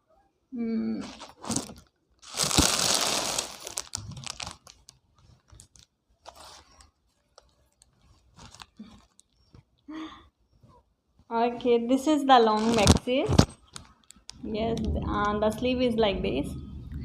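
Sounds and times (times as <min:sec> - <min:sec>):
packaging tearing and crinkling: 0:01.0 - 0:09.4, 0:12.6 - 0:14.2.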